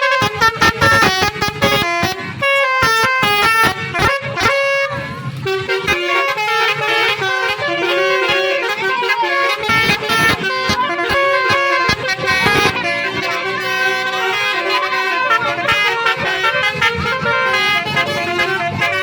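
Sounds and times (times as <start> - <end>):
musical bus air horn melody: 0.0 - 19.0.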